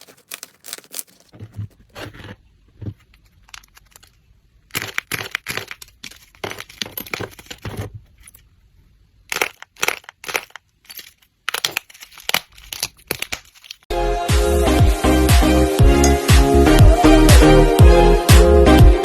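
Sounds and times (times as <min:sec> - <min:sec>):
loud music with a beat: 0:13.9 - 0:19.0.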